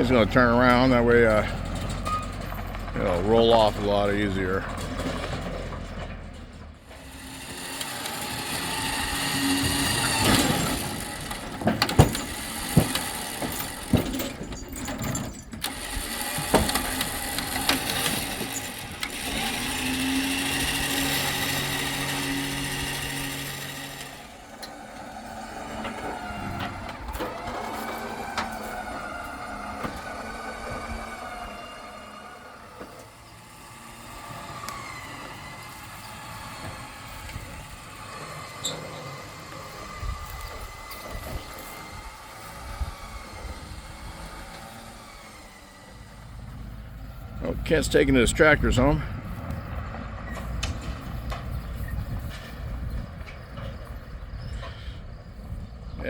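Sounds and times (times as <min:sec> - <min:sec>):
vehicle engine running: 0:00.0 - 0:14.6, 0:15.4 - 0:56.0
metal clanks and knocks: 0:00.0 - 0:20.8.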